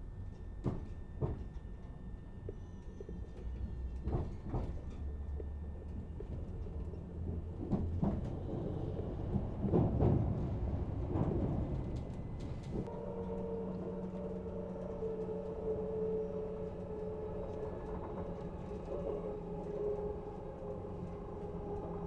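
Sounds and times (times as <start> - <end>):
knocks and clunks of train car: 0.5 - 14.6
train wheels rumbling on rails: 0.6 - 22.0.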